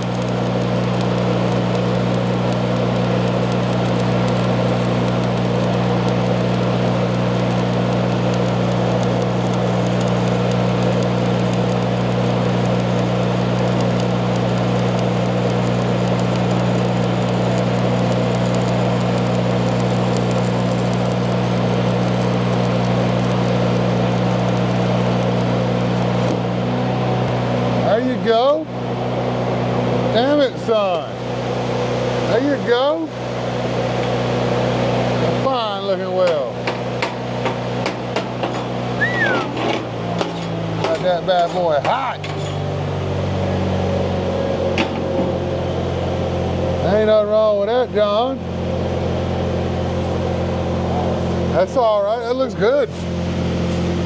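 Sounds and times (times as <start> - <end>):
welder low hum: 0.0 - 26.4
welding arc crackling: 0.0 - 26.4.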